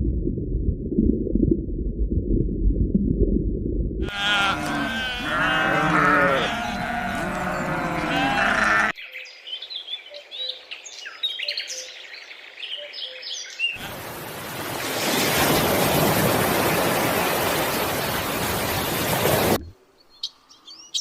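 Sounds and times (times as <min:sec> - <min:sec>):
sheep bleating: 0:04.0 - 0:09.0.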